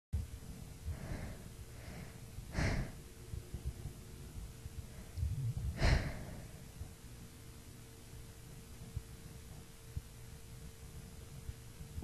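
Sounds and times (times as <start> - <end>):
woman hitching breaths: 0.5 - 3.6, 4.8 - 7.0.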